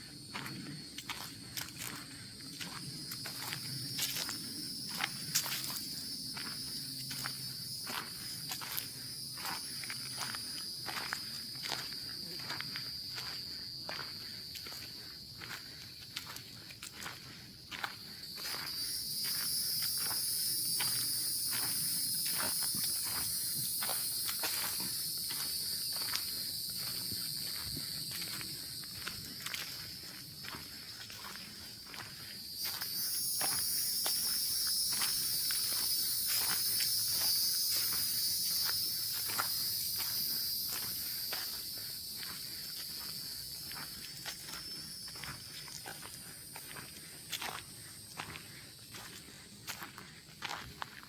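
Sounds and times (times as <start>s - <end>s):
footsteps on forest trail: 0.0s - 51.0s
high-pitched insect buzz: 1.8s - 13.4s, 18.3s - 47.5s.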